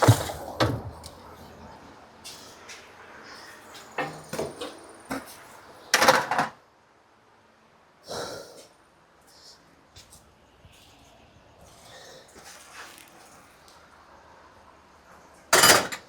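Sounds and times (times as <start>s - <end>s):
objects knocking: 0.0s - 1.2s
objects scraping: 0.0s - 1.4s.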